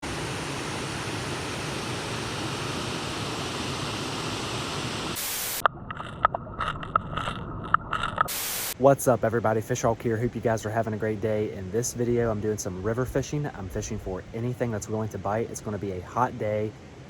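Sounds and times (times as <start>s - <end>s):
high hiss: 0.1s - 5.6s, 8.3s - 9.0s.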